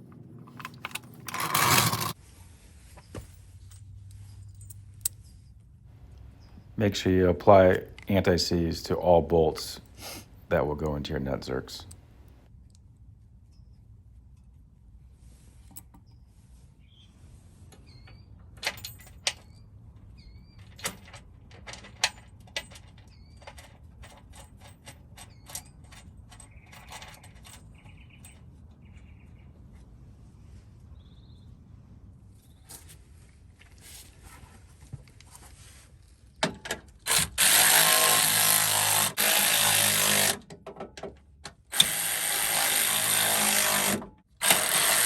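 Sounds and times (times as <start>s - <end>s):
small birds chirping: 6.1s - 6.8s, 26.4s - 29.6s, 30.9s - 31.6s
clinks of bolts and hand tools: 20.6s - 28.6s.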